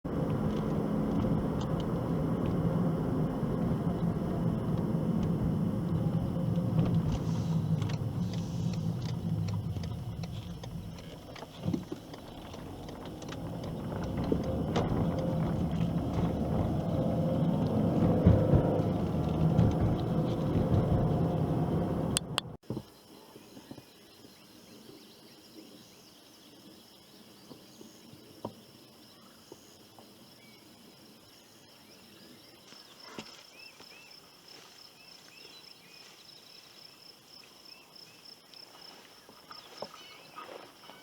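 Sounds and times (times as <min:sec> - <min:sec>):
vehicle engine rumbling: 0:00.0 - 0:22.7.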